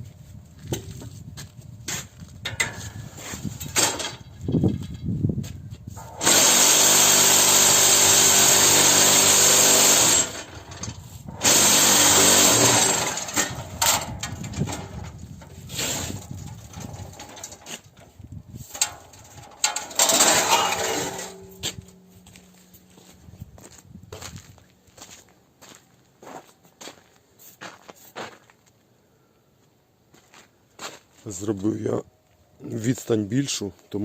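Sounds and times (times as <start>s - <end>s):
knocks and clatters: 2.4s - 5.1s, 10.0s - 15.6s, 16.2s - 22.5s
vibration motor running: 6.0s - 10.6s, 11.4s - 13.7s.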